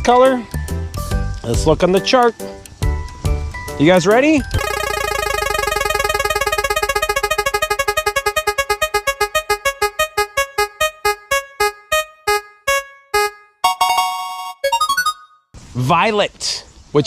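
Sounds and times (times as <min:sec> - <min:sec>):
spinning wheel electronic ticks: 0:04.6 - 0:14.0.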